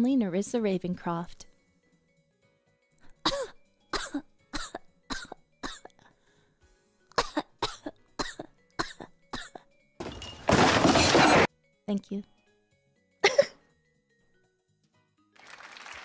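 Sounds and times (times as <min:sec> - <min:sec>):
faint background music: 0:00.0 - 0:16.0
woman imitating coughing: 0:03.3 - 0:05.9, 0:07.2 - 0:09.6, 0:13.2 - 0:13.6.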